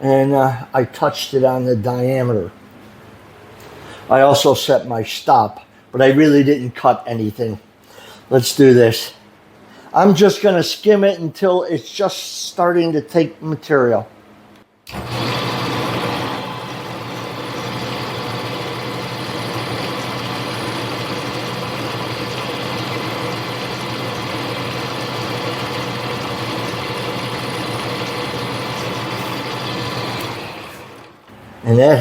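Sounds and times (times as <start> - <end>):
lathe motor hum: 14.9 - 31.4.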